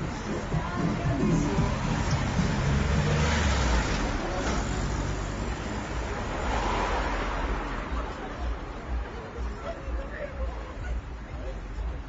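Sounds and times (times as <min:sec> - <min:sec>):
vehicle passing: 0:00.0 - 0:08.9
car passing: 0:00.0 - 0:09.6.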